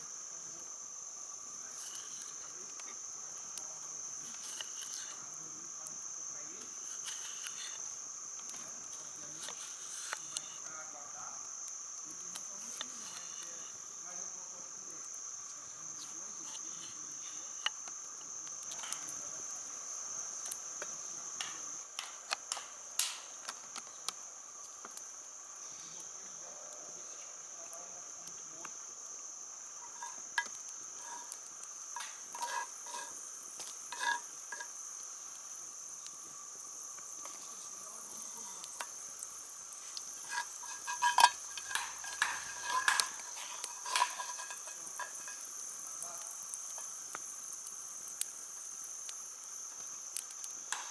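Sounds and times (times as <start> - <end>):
insects chirring: 0.0 - 50.9
sharp clicks and knocks: 40.2 - 45.4.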